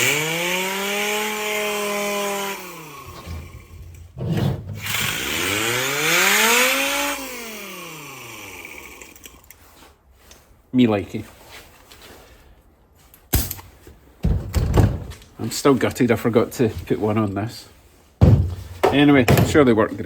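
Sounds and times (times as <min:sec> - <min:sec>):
pneumatic sander whine: 0:00.0 - 0:09.5.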